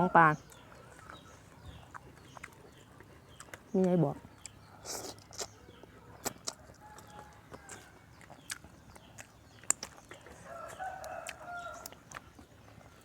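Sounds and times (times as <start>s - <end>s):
rooster crowing faintly: 10.4s - 12.0s.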